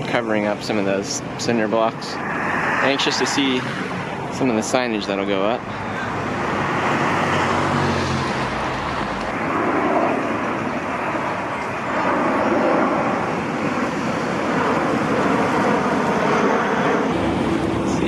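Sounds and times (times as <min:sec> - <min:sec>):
road traffic rushing: 0:00.0 - 0:11.6, 0:17.0 - 0:18.0.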